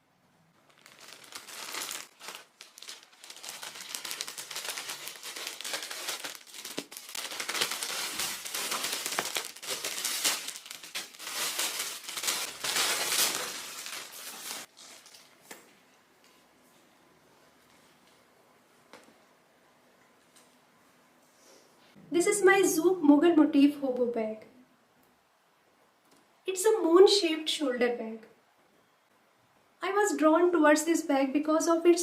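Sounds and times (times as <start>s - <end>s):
packaging crinkling and rustling: 0.6s - 15.4s.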